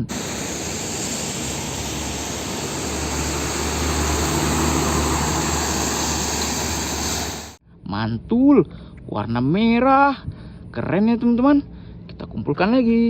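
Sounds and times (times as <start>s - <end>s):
water spraying: 0.0s - 7.6s.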